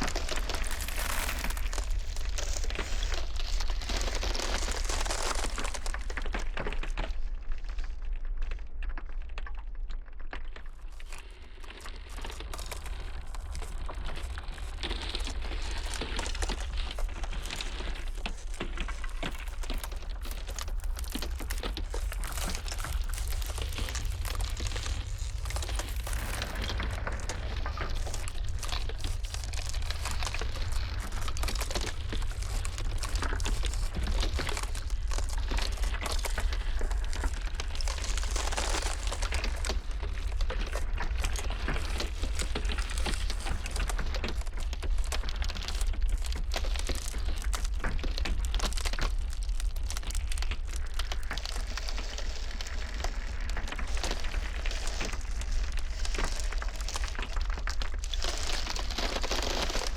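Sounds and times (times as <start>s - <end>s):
ice crackling and snapping: 0.0s - 59.9s
steady low rumble: 12.5s - 43.7s.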